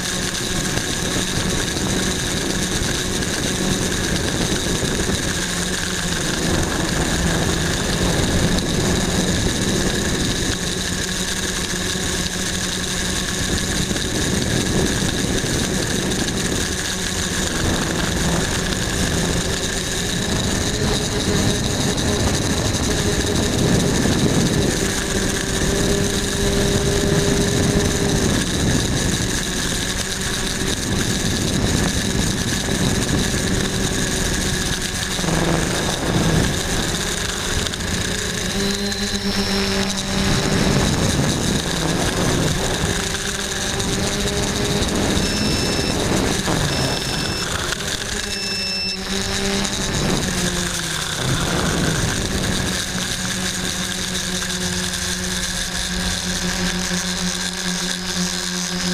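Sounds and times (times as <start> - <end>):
quadcopter propellers buzzing: 0.0 - 58.9
short high beeps: 45.2 - 49.2.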